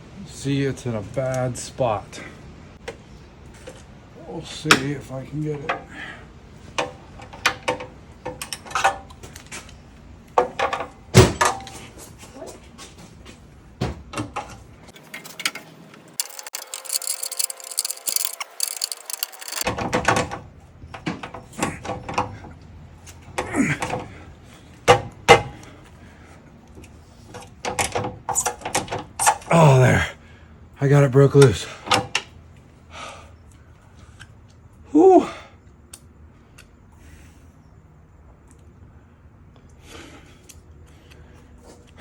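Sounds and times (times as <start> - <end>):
metal tools clanking: 16.2 - 19.7.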